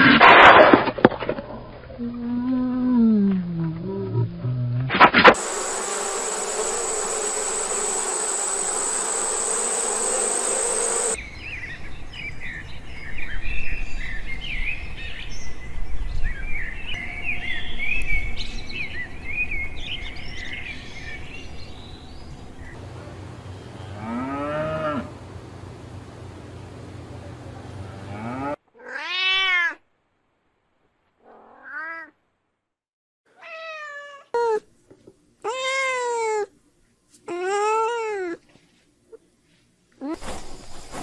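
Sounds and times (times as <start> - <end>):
high buzzing hiss: 5.3 - 11.2
animal call rising and falling: 5.4 - 11.2
quick high chirps: 5.4 - 11.2.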